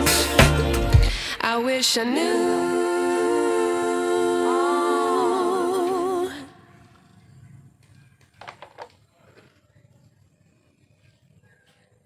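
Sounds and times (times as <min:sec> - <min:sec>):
person singing with vibrato: 0:00.0 - 0:06.8.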